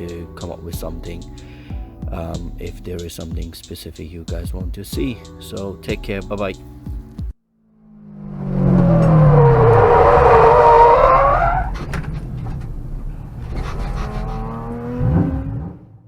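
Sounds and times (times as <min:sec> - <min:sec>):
car engine revving: 0:07.8 - 0:16.0.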